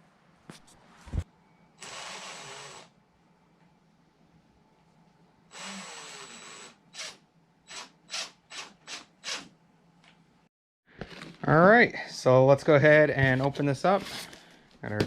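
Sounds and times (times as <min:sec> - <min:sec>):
power drill driving a screw: 0:01.8 - 0:02.9, 0:05.5 - 0:09.5.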